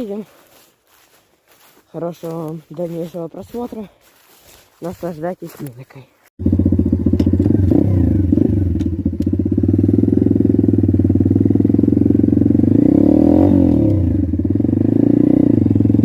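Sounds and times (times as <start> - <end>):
motorbike engine running: 6.4 - 16.0.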